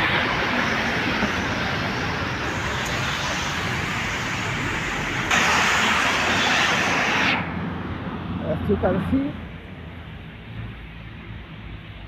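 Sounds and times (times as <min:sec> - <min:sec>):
heavy rain hissing: 0:00.0 - 0:07.4
wet road traffic: 0:00.0 - 0:12.0.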